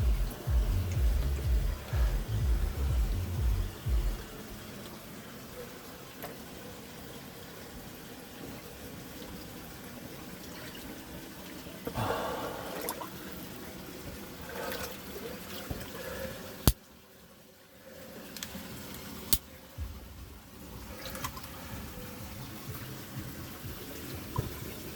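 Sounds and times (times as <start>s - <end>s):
waterfall splashing: 11.9s - 16.8s.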